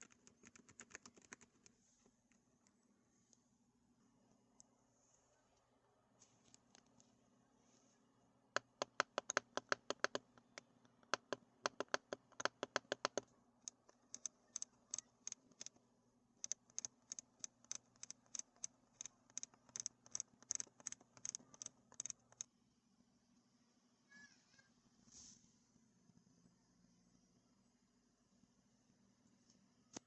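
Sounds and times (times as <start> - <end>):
mechanical keyboard clicks: 0.0 - 1.7, 8.6 - 15.8, 16.4 - 22.5.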